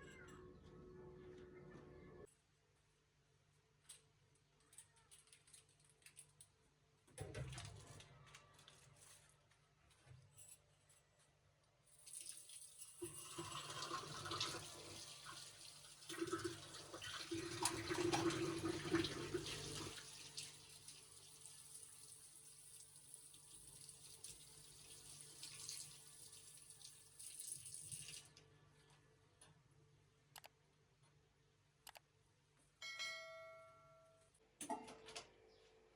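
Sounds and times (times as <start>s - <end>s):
light clatter of items: 3.7s - 13.0s, 34.6s - 35.6s
tap water running into sink: 12.0s - 28.3s.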